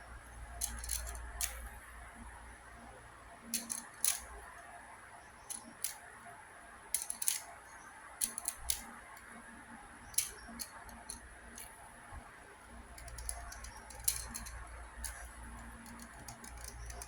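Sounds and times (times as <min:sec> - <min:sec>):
fidget spinner clicks and taps: 0:00.4 - 0:01.8, 0:03.4 - 0:04.7, 0:05.4 - 0:06.1, 0:06.9 - 0:17.0.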